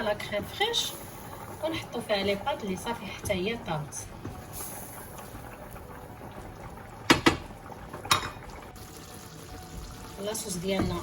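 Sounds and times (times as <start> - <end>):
sauce simmering in a pan: 0.0 - 11.0
utensil knocking on pan: 7.1 - 7.5.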